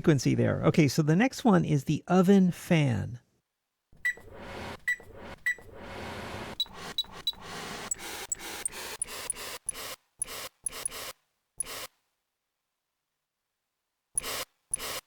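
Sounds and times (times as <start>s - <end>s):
click and beep: 4.0s - 5.7s, 6.5s - 11.8s.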